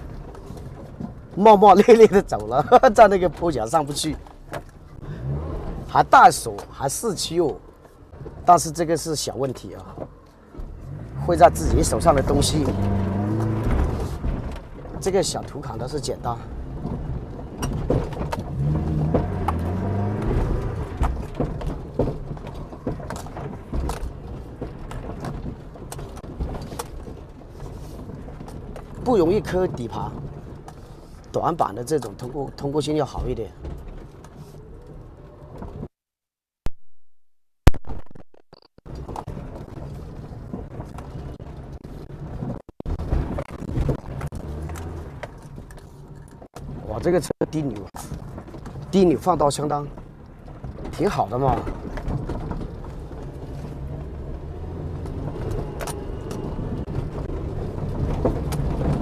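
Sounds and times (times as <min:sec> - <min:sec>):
engine pulling under load: 0:00.0 - 0:08.5, 0:09.8 - 0:31.3, 0:38.9 - 0:46.9, 0:48.1 - 0:59.0
vehicle rumbling on dirt track: 0:00.0 - 0:35.9, 0:37.8 - 0:59.0
chassis clunks and rattles: 0:09.9 - 0:29.1, 0:37.6 - 0:59.0.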